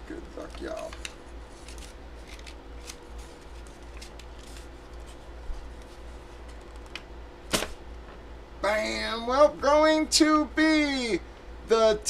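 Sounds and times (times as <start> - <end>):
packaging rustling: 0.2 - 7.0
paper clicks: 0.2 - 7.7.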